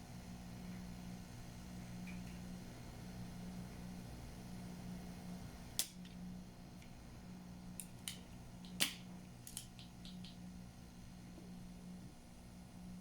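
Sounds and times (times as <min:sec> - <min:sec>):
fan humming: 0:00.0 - 0:13.0
solder sucker snapping: 0:07.8 - 0:10.4.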